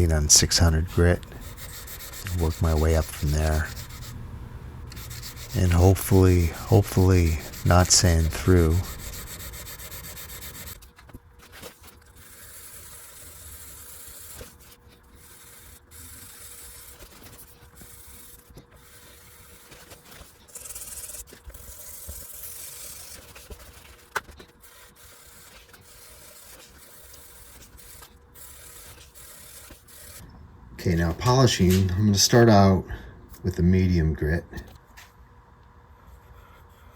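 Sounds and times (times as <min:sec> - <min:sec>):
sandpaper rubbing: 0:00.0 - 0:04.2, 0:04.9 - 0:10.8, 0:11.4 - 0:30.2
faint steady hum: 0:00.0 - 0:10.8, 0:24.8 - 0:36.9.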